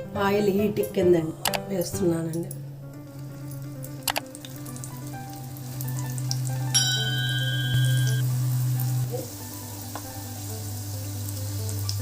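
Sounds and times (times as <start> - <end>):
oil sizzling in a pan: 3.0 - 12.0
metal clink: 6.8 - 8.2.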